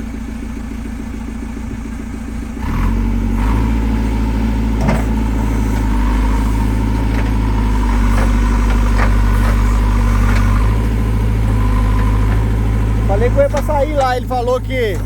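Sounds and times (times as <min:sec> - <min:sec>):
diesel engine running: 0:00.0 - 0:15.0
metallic clanks: 0:04.8 - 0:15.0.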